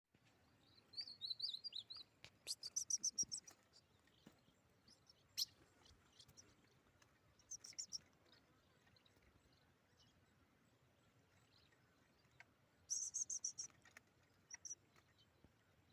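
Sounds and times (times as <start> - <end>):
bird warbling and chirping: 0.6 - 6.8, 7.4 - 9.3, 11.4 - 14.8.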